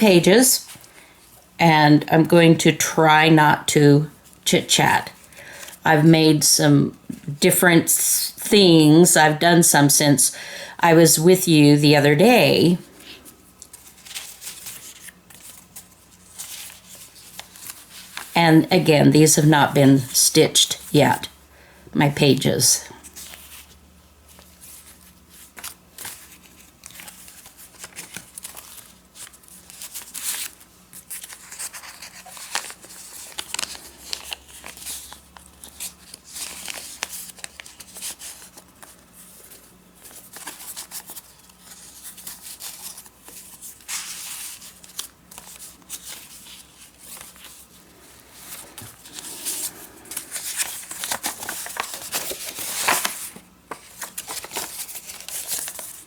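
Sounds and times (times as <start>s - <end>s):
paper rustling and crinkling: 13.3s - 18.4s, 23.0s - 56.0s.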